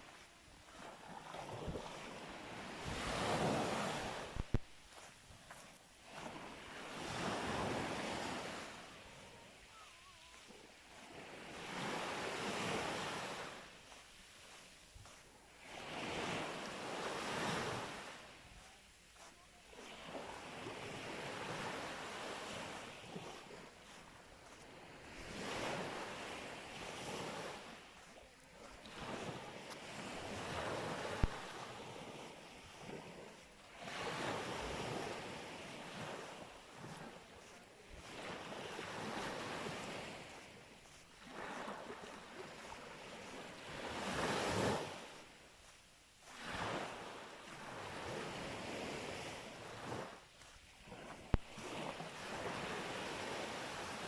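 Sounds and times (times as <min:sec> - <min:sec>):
sea waves breaking on beach: 0:00.0 - 0:54.0.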